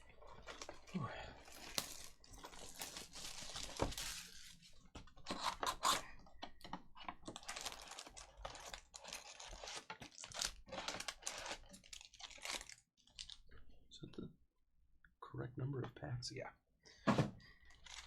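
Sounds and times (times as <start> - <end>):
foil wrappers tearing and crinkling: 0.1 - 4.8, 7.2 - 13.4, 17.7 - 18.0
cards rustling and clicking: 1.5 - 4.7.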